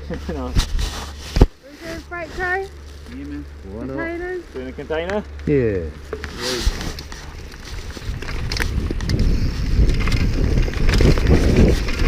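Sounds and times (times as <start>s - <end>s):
mountain bike clattering: 3.7s - 12.0s.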